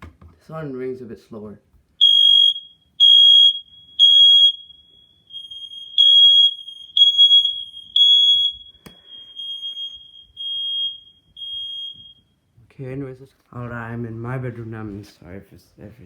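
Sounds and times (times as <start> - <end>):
faint alarm tone: 2.0 - 12.4
smoke alarm beeping: 2.0 - 12.4
click: 8.8 - 9.0.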